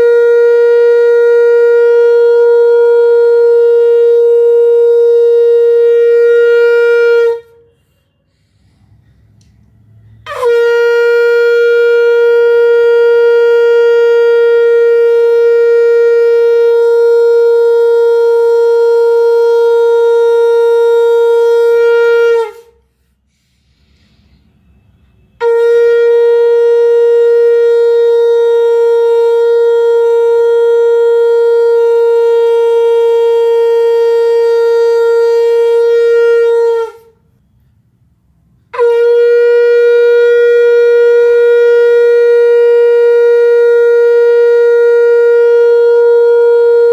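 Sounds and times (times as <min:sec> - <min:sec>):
conch shell blasts: 0:00.0 - 0:08.5, 0:09.7 - 0:22.9, 0:23.8 - 0:37.5, 0:38.4 - 0:46.9.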